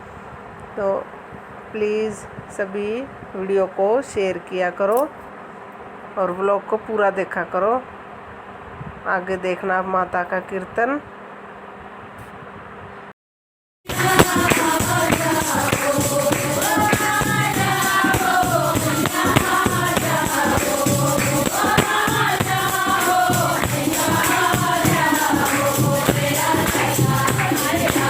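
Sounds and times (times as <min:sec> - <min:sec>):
hand percussion strokes: 0:13.9 - 0:28.0
voices singing together: 0:13.9 - 0:28.0.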